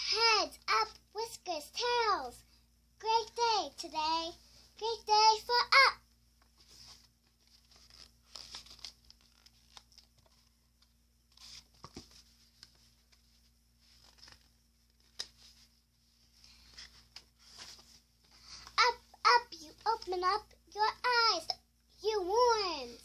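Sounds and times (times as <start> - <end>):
book pages rustling: 6.4 - 18.8.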